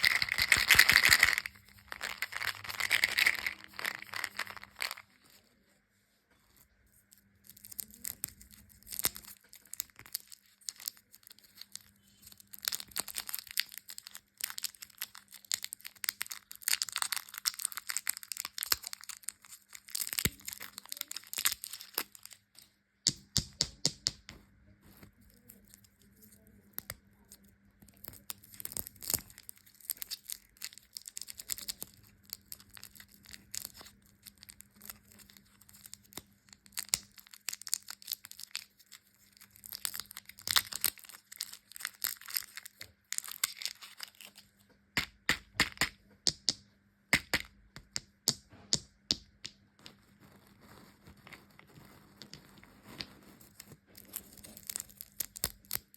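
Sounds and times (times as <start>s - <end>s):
candy wrappers crinkling: 0.0s - 5.5s, 7.0s - 22.7s, 25.1s - 45.9s, 49.8s - 55.9s
faint steady hum: 0.0s - 55.9s.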